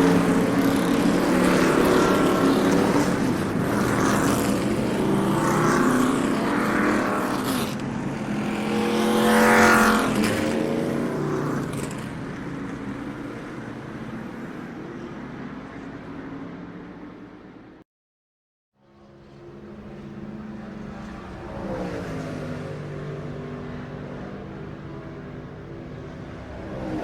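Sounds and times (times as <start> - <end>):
race car engines passing: 0.0 - 17.8, 18.8 - 27.0.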